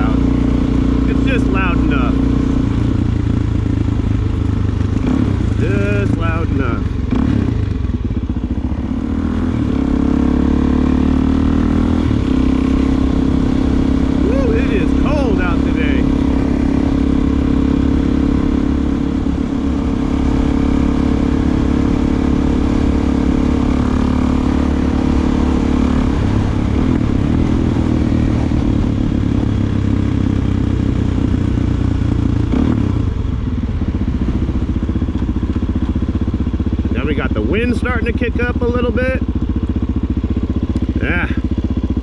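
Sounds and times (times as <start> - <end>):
motorcycle engine running: 0.0 - 42.0.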